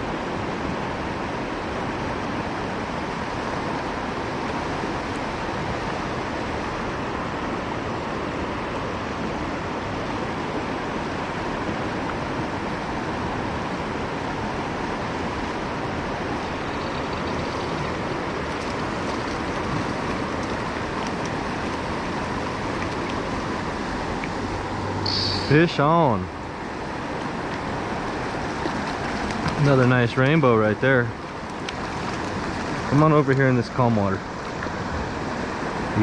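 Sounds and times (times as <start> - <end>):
river current rushing: 0.0 - 36.0.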